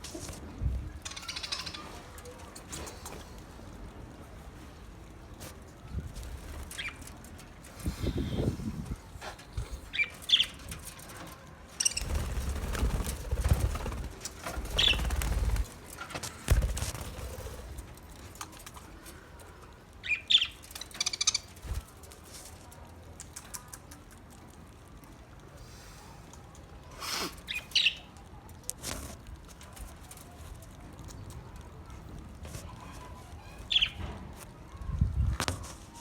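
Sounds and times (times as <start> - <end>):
wings flapping: 6.0 - 7.9, 10.3 - 19.0.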